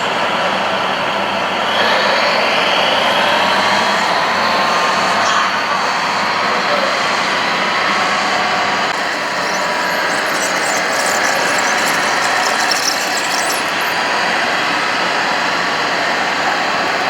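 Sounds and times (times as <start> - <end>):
small electric motors whining: 8.8 - 14.2
gritty crackling: 9.0 - 14.0.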